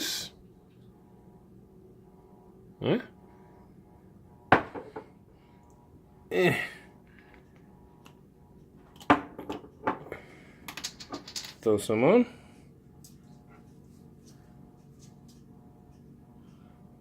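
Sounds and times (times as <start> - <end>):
hard objects knocking and clicking: 10.7 - 11.6.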